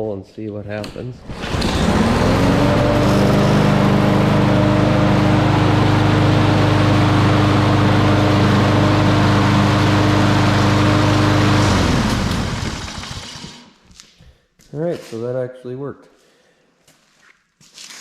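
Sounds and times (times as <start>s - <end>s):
lawn mower engine running: 0.8s - 13.8s
engine winding down: 1.2s - 13.8s.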